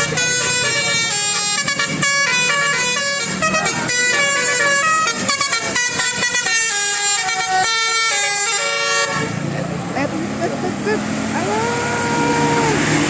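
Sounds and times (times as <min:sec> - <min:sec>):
musical bus horn melody: 0:00.0 - 0:09.5.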